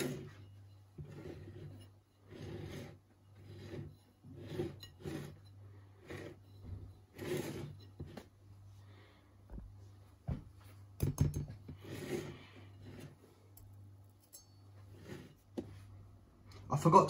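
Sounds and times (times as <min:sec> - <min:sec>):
short rasping scrapes: 0:00.0 - 0:08.3, 0:11.8 - 0:13.3, 0:14.8 - 0:15.6
low steady hum: 0:00.0 - 0:17.0.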